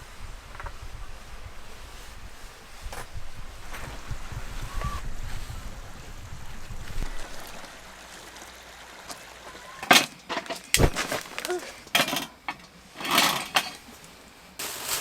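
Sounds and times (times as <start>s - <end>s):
wind buffeting microphone: 0.0s - 8.4s
soft hiss: 0.0s - 15.0s.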